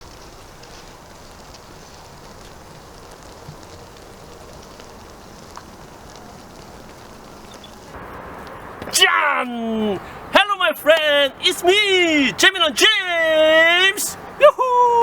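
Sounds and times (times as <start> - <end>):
faint ticks: 0.0 - 8.6
steady background hiss: 0.0 - 15.0.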